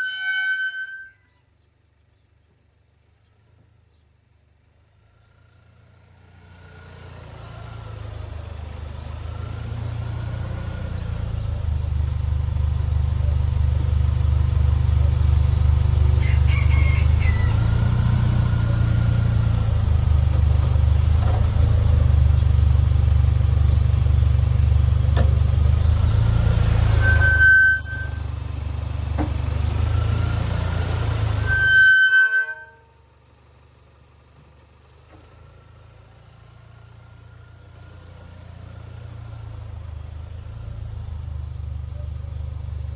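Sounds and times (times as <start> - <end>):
faint high-pitched screech: 0.0 - 1.4, 16.2 - 19.9, 26.9 - 28.2, 30.2 - 32.9
low vehicle rumble: 2.4 - 42.9.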